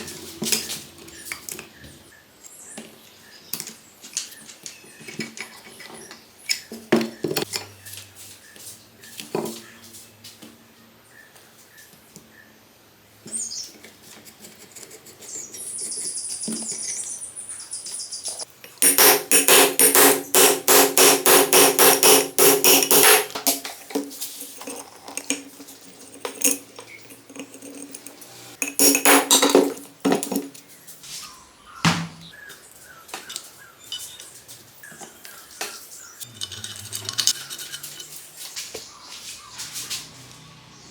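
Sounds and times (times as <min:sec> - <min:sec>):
rapid metal-on-metal striking: 0:18.8 - 0:23.4.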